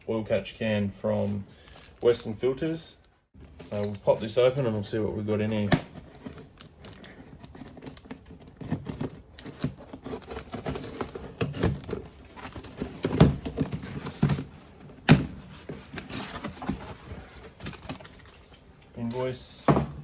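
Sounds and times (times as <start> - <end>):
packaging rustling and crinkling: 3.4 - 19.6
knocks and thunks on box: 12.8 - 15.6, 19.6 - 20.0.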